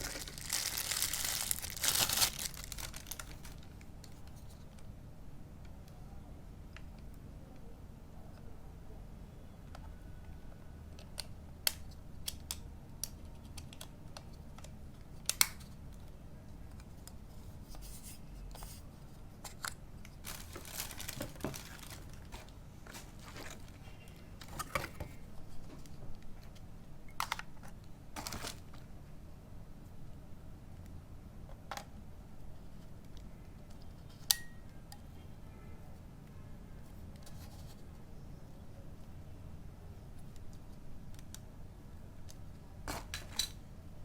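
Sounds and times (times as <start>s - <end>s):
packaging crinkling and rustling: 0.0s - 4.2s, 20.1s - 25.2s, 28.2s - 28.8s.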